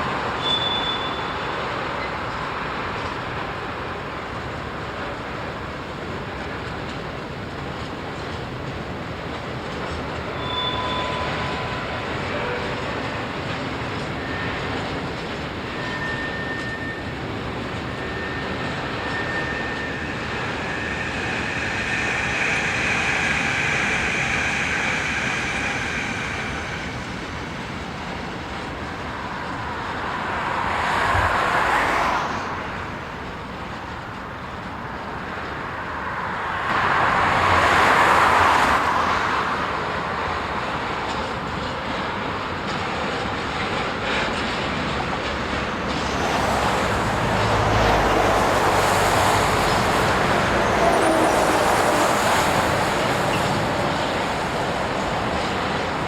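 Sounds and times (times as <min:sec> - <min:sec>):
freight train rolling on tracks: 0:00.0 - 0:56.0
thin steady squeal: 0:09.8 - 0:32.4.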